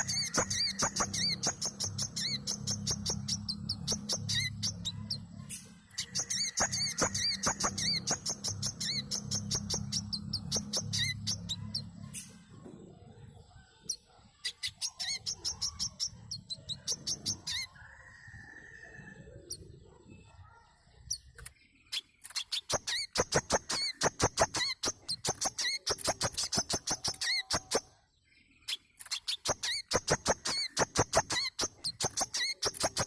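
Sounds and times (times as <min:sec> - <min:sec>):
sunbird chirping: 0:00.0 - 0:12.6, 0:13.6 - 0:18.2.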